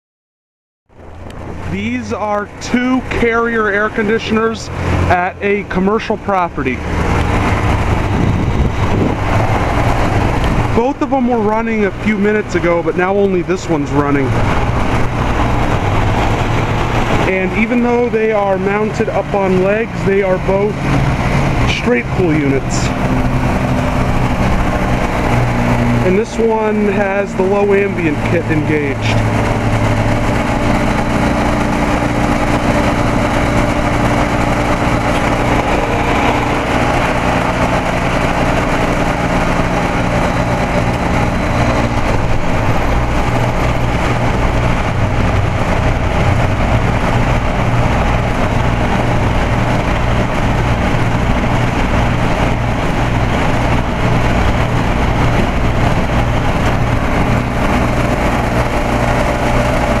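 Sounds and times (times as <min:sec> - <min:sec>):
compressor hum: 0:00.9 - 1:00.0
condenser fan rushing: 0:00.9 - 1:00.0.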